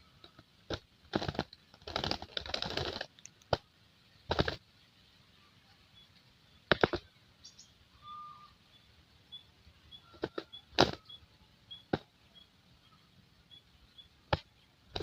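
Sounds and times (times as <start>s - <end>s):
faint high chirps: 5.2s - 14.8s.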